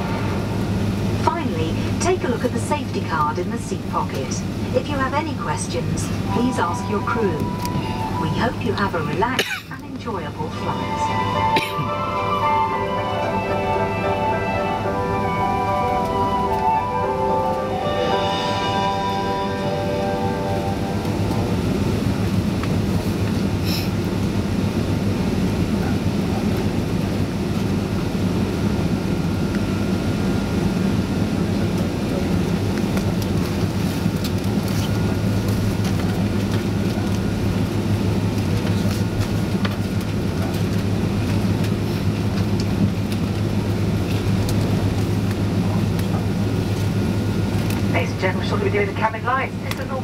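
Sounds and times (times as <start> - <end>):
aircraft cabin engine drone: 0.0 - 50.0.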